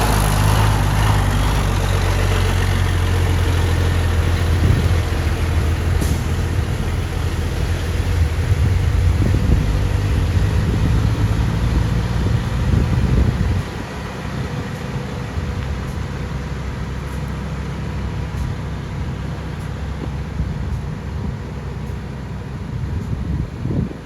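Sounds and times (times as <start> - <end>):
heavy machine engine rumbling: 0.0 - 24.0.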